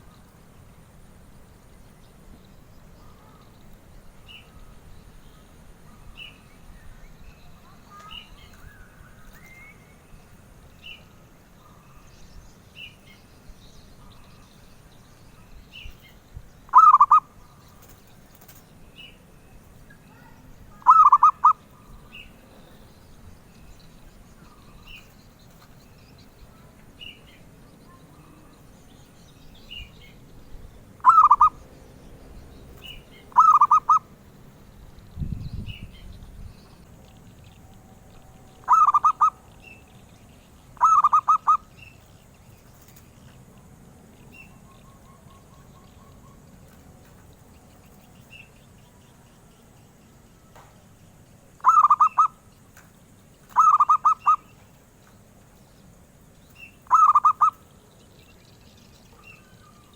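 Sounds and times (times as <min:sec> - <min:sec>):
faint high chirps: 0:01.8 - 0:31.7
dove cooing: 0:16.7 - 0:18.6, 0:20.8 - 0:22.8, 0:31.0 - 0:31.6, 0:33.3 - 0:34.1, 0:38.6 - 0:39.6, 0:40.8 - 0:41.7, 0:51.6 - 0:52.4, 0:53.5 - 0:54.6, 0:56.8 - 0:57.6.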